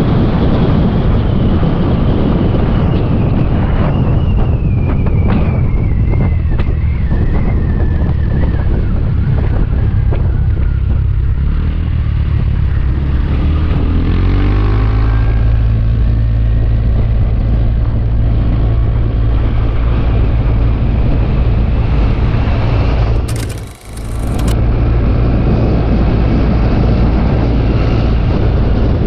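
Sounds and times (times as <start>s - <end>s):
wind rumble: 0.0s - 29.0s
motorbike engine: 8.4s - 25.0s.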